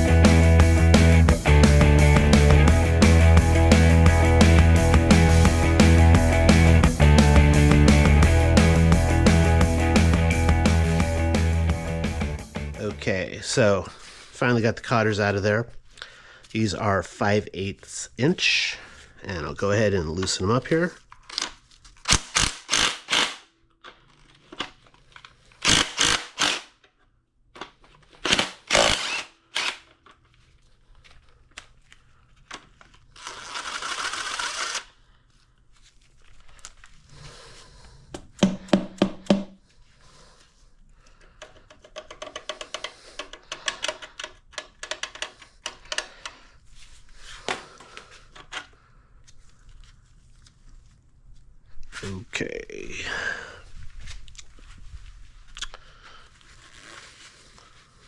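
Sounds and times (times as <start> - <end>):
wrench clicking on metal nuts: 41.4 - 46.1.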